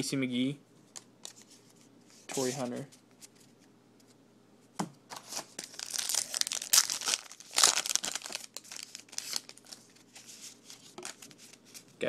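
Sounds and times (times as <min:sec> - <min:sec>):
wrapper tearing and crinkling: 0:05.2 - 0:10.1, 0:10.7 - 0:11.8.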